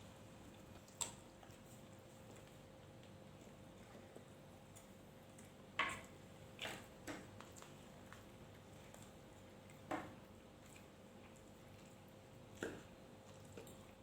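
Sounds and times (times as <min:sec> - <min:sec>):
faint steady hum: 0:00.0 - 0:14.0
eating clicks and smacks: 0:00.5 - 0:14.0.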